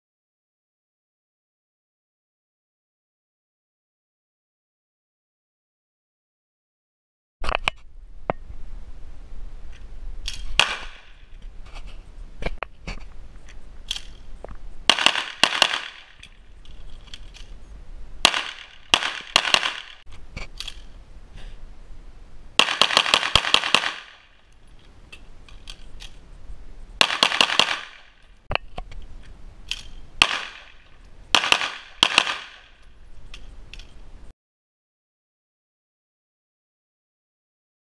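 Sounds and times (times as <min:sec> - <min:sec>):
handgun shots: 0:10.3 - 0:11.2, 0:14.9 - 0:16.2, 0:18.2 - 0:20.0, 0:22.6 - 0:24.2, 0:27.0 - 0:28.1, 0:29.7 - 0:32.7.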